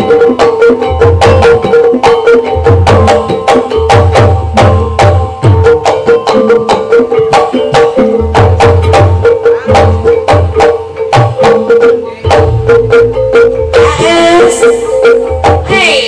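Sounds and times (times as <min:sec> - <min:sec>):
struck mallet instrument notes: 0:00.0 - 0:16.0.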